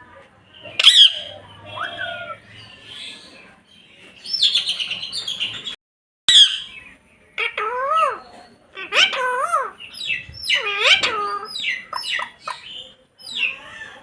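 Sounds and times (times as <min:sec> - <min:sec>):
parrot chirping and squawking: 0:00.6 - 0:02.6, 0:06.3 - 0:06.8, 0:07.4 - 0:14.0.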